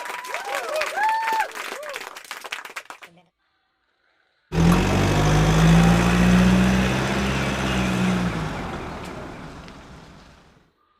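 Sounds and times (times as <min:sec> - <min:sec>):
car engine humming: 0:04.5 - 0:10.6.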